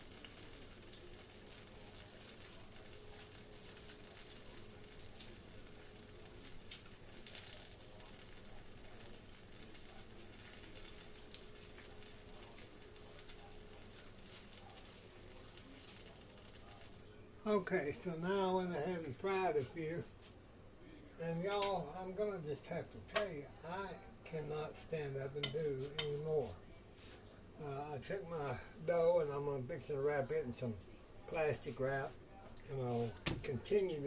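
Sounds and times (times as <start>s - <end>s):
pies sizzling in hot grease: 0.0s - 17.0s.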